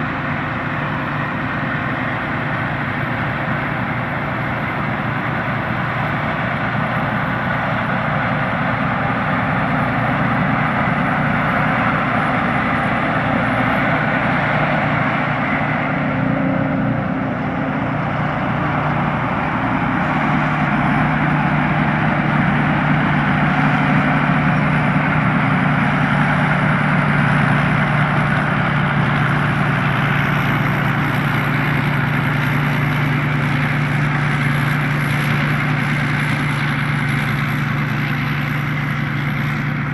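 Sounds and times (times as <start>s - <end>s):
combine harvester engine drone: 0.0s - 39.9s
machinery clatter: 0.0s - 39.9s.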